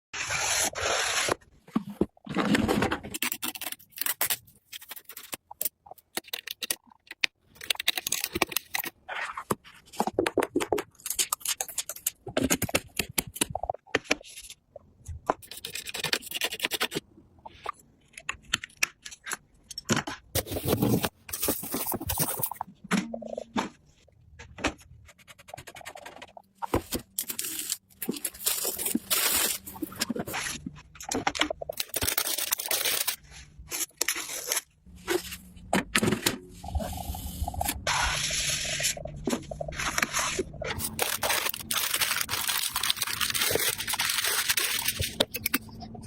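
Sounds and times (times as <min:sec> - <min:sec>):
hands scraping and rustling parts: 0:37.6 - 0:45.9.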